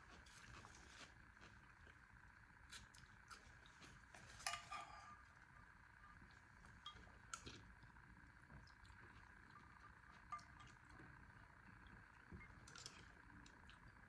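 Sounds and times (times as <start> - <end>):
faint steady hum: 0.0 - 14.0
utensil clinking on bowl: 10.3 - 10.9.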